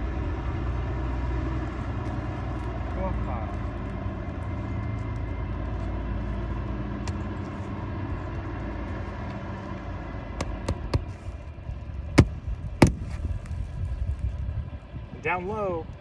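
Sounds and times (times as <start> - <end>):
low motor rumble: 0.0 - 16.0
hammering nails: 10.4 - 11.2.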